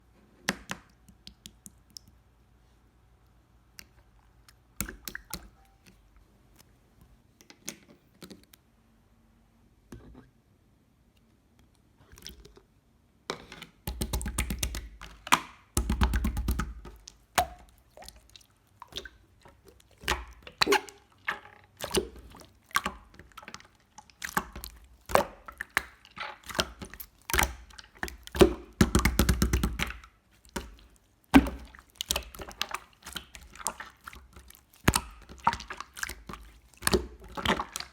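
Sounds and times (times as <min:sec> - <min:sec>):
slime clicking and squelching: 0:00.5 - 0:02.2, 0:03.7 - 0:06.0, 0:13.9 - 0:37.9.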